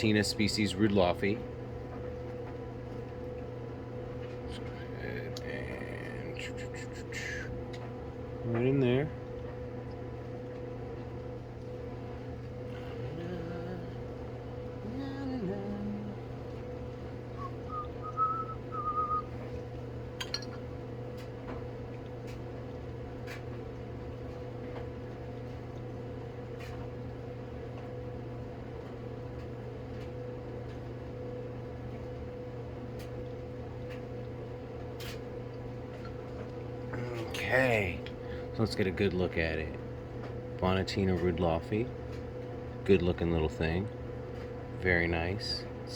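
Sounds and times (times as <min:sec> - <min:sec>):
electrical hum: 0:00.0 - 0:45.9
whistled notes: 0:17.4 - 0:19.3.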